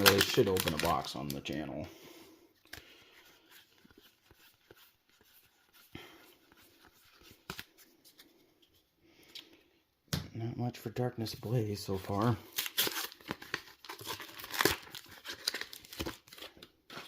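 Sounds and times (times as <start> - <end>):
trading cards rustling: 0.0 - 1.8, 2.6 - 8.8, 11.4 - 17.0.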